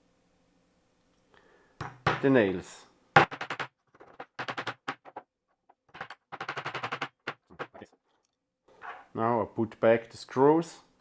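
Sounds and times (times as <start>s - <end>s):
hammer tapping nails into wood: 1.8s - 2.3s, 3.2s - 5.2s, 5.9s - 7.8s.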